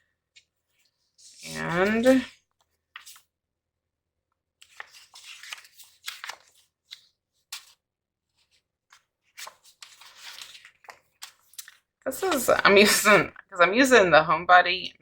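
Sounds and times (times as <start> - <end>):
paper sheets rustling and crinkling: 0.4 - 3.3, 4.6 - 13.4.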